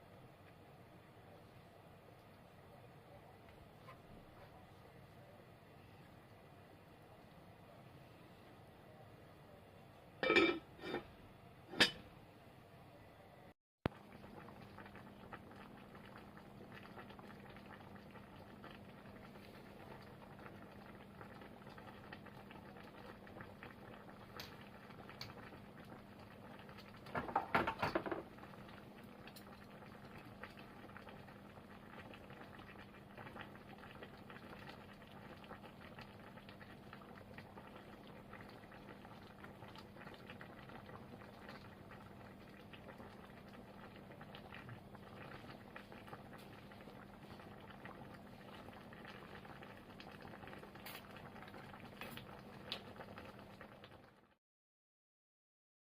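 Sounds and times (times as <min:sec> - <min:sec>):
pot bubbling at a simmer: 0:13.9 - 0:54.4.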